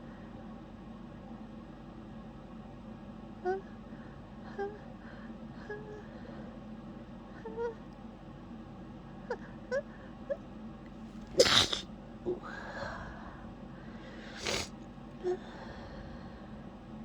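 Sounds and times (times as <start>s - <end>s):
catching breaths: 11.3s - 11.8s, 12.4s - 16.8s
breathy exhale: 11.4s - 11.8s, 12.4s - 16.6s
person sneezing: 11.4s - 11.8s, 14.2s - 14.7s
quiet sniff: 11.4s - 11.8s, 14.1s - 14.7s.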